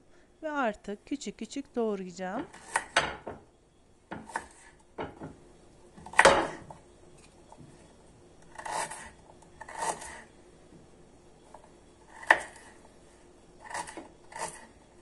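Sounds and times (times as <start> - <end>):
knife scraping strokes: 8.5 - 10.3, 13.6 - 14.8.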